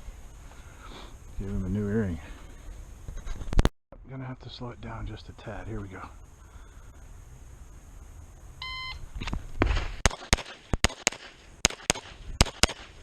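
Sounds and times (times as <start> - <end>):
shot timer beep: 8.6 - 9.0
pistol shots: 9.6 - 13.0.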